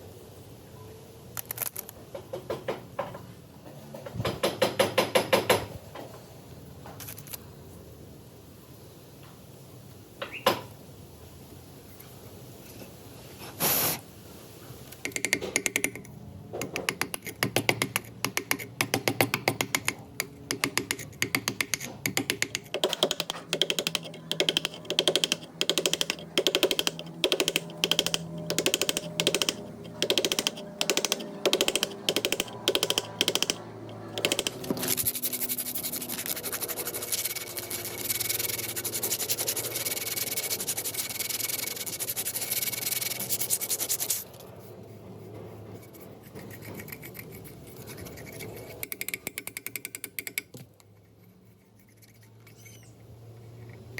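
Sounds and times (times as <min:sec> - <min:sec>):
rapid mechanical clicking: 0:14.9 - 0:44.5, 0:45.8 - 0:50.9
steady rubbing: 0:20.8 - 0:49.2.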